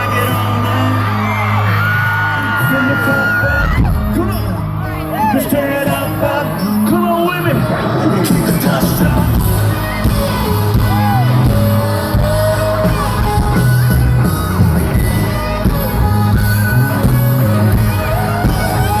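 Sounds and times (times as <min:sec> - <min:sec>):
crowd shouting: 0:00.0 - 0:06.6, 0:07.5 - 0:19.0
live country-rock band: 0:00.0 - 0:19.0
person singing: 0:05.0 - 0:19.0.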